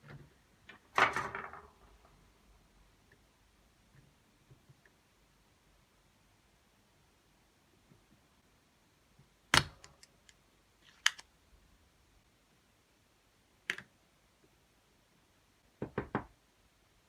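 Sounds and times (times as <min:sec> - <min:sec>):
plastic keyboard parts clicking: 0:09.5 - 0:11.3.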